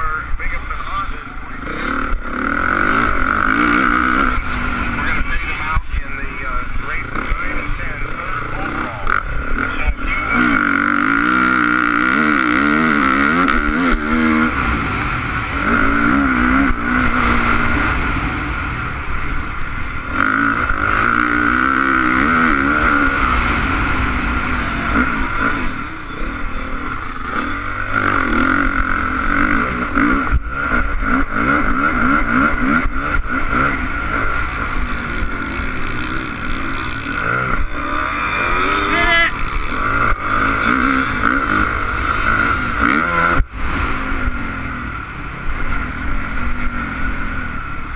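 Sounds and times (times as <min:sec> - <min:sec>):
motocross engine revving: 0:00.0 - 0:47.9.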